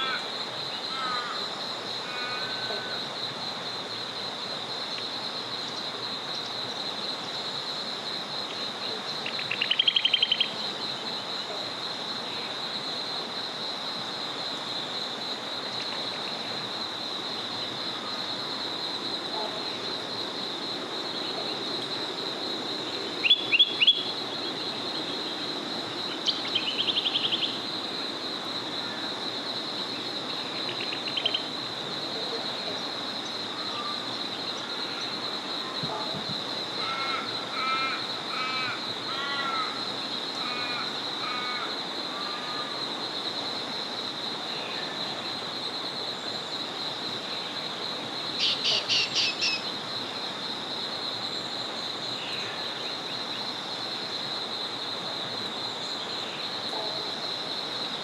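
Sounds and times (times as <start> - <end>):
forest river flowing: 0.0 - 35.8.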